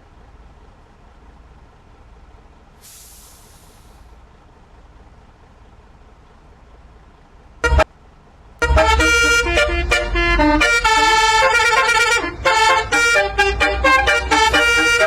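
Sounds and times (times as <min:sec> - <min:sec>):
horn playing a tune: 0:07.6 - 0:07.8, 0:08.6 - 0:15.0
bus horn toot: 0:07.6 - 0:07.9, 0:08.6 - 0:15.0.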